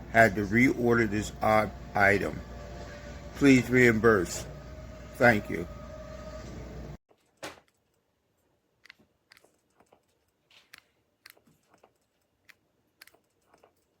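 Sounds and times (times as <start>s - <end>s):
faint small clicks and ticks: 8.8s - 14.0s.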